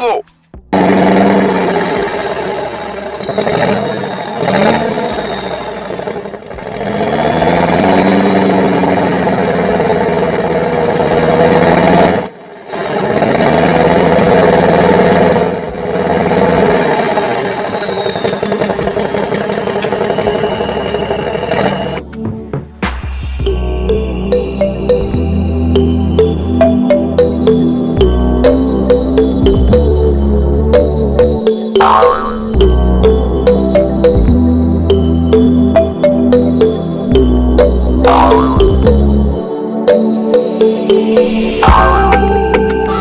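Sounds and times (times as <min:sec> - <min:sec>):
heavy vehicle engine revving: 0:00.7 - 0:22.0.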